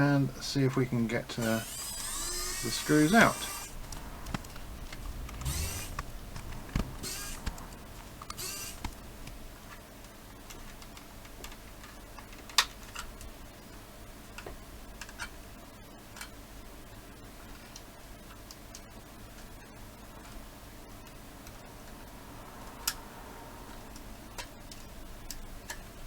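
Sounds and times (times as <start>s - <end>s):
electric screwdriver whirring: 1.4s - 3.7s, 5.3s - 6.0s, 6.7s - 7.6s, 8.2s - 8.9s.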